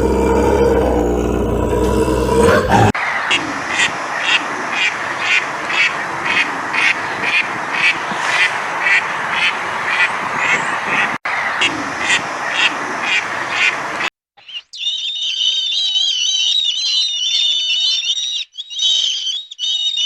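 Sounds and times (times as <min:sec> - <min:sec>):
animal calling: 0:00.0 - 0:08.6, 0:14.4 - 0:20.0.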